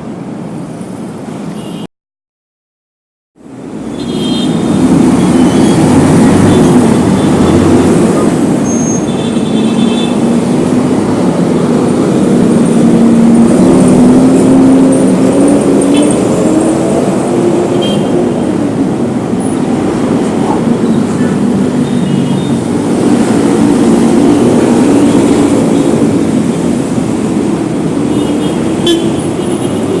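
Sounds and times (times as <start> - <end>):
passing road traffic: 0.0 - 1.9, 3.4 - 30.0.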